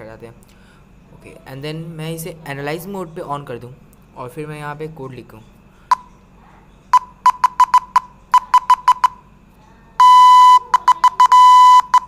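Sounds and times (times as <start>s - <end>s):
morse code beeps: 6.9s - 9.2s, 10.0s - 12.0s.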